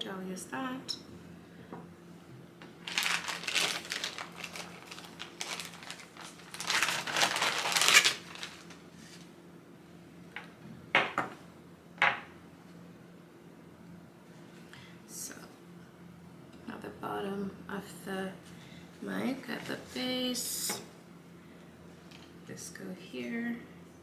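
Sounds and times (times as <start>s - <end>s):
packaging crinkling: 2.6s - 9.3s.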